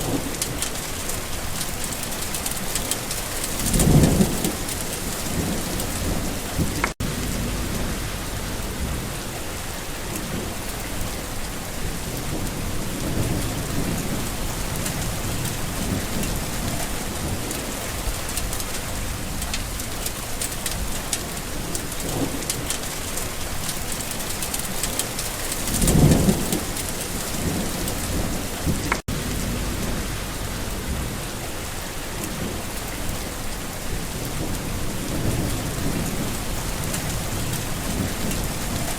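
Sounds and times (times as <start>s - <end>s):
low thunder rumbles: 0.0s - 38.9s
steady rain falling: 0.0s - 38.9s.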